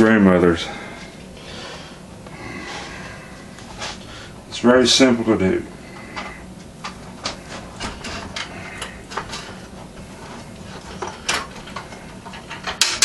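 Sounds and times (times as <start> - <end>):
record changer clicks and knocks: 11.1 - 13.0.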